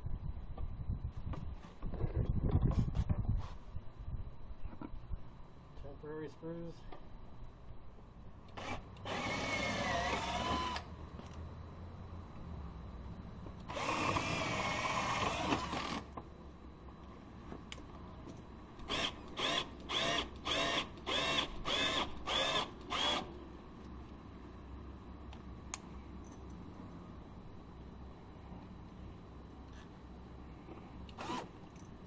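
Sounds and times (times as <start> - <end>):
power drill driving a screw: 8.6 - 10.9, 13.7 - 16.1, 18.9 - 23.3, 31.2 - 31.5.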